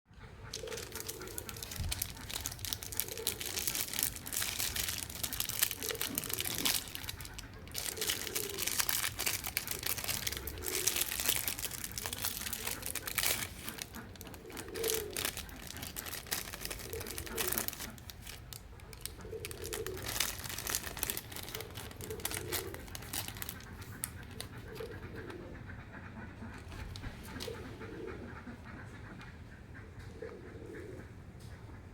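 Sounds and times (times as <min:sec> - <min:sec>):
packaging crinkled and torn: 0:00.5 - 0:25.0.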